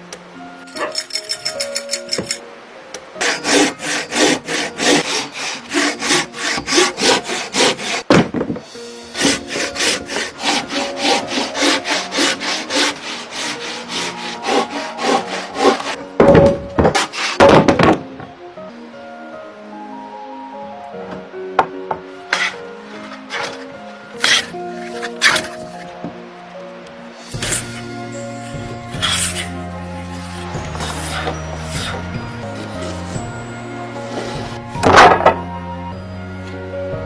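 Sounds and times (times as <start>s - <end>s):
background music: 0.0s - 37.0s
hand saw cutting wood: 3.2s - 8.1s, 8.8s - 16.0s, 16.8s - 17.5s, 22.3s - 25.8s, 27.3s - 35.4s.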